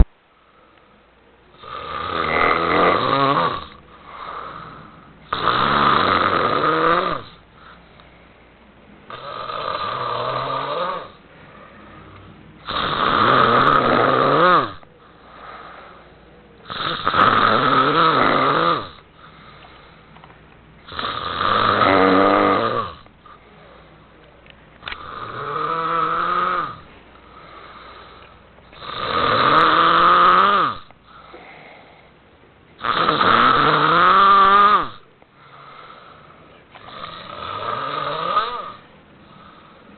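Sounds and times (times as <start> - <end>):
man snoring: 1.6 - 7.4, 9.1 - 11.2, 12.6 - 19.1, 20.8 - 23.1, 24.8 - 28.2, 28.8 - 31.4, 32.8 - 39.8
faint breaths: 3.7 - 5.3, 7.3 - 9.0, 10.9 - 12.6, 14.8 - 16.7, 19.0 - 20.9, 23.0 - 25.3, 26.7 - 29.0, 30.9 - 32.6, 35.0 - 37.4, 38.5 - 39.9.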